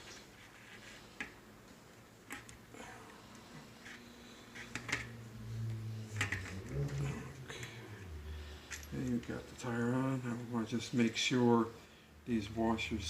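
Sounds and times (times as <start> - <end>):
low hum: 2.7 - 10.8.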